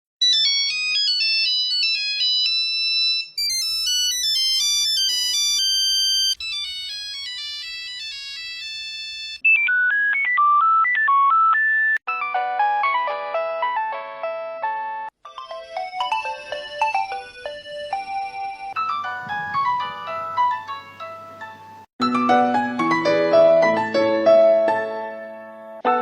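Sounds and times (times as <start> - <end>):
electronic phone ringtones: 0.2 - 12.0, 15.2 - 21.4.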